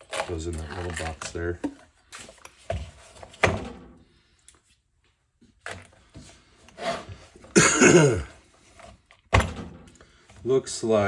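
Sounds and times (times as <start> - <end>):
wooden drawer scraping: 6.7 - 7.5.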